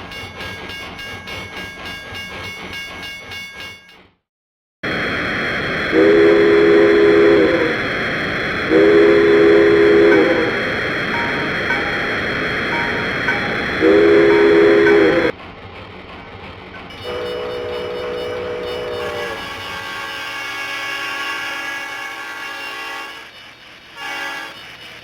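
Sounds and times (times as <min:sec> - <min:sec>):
locomotive chime whistle: 0:00.0 - 0:04.0, 0:05.9 - 0:07.7, 0:08.7 - 0:15.4, 0:16.9 - 0:23.4, 0:24.0 - 0:25.0.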